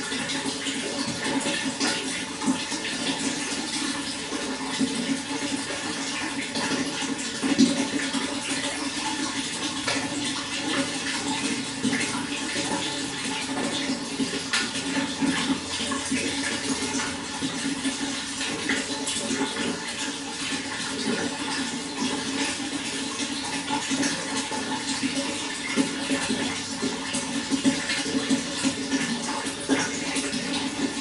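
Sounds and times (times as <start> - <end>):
running water splashing: 0.0 - 31.0.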